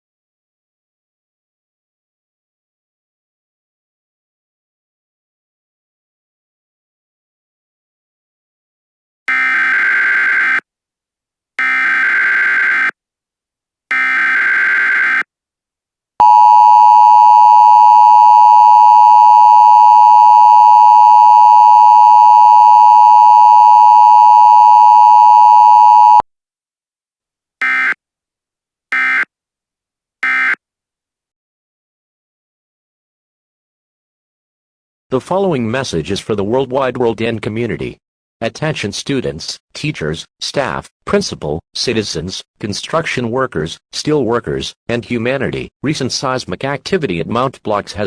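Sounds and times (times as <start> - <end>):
two-tone attention signal: 16.2 - 26.2.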